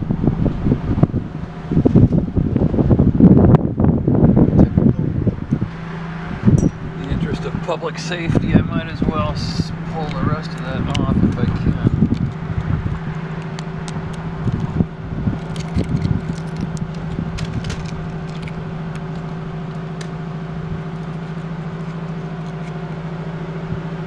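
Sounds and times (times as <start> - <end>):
low machine hum: 0.0 - 24.0
concrete scraping and crumbling: 9.4 - 23.3.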